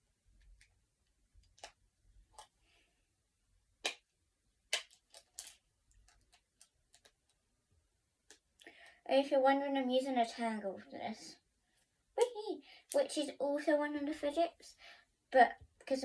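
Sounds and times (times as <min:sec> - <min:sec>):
plastic fidget toy clicks: 0:12.2 - 0:13.2.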